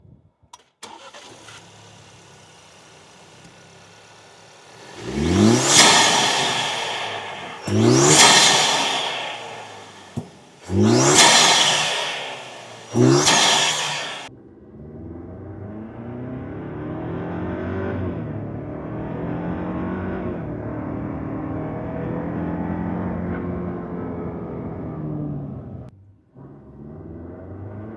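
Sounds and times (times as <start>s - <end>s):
car engine idling and revving: 0.6s - 27.9s
intake hiss: 5.0s - 14.3s.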